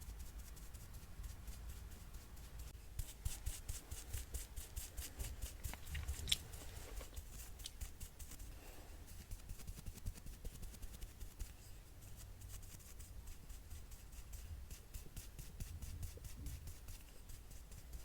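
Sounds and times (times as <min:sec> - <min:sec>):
low steady hum: 0:00.0 - 0:18.0
small art tools clicking and tapping: 0:05.8 - 0:06.4.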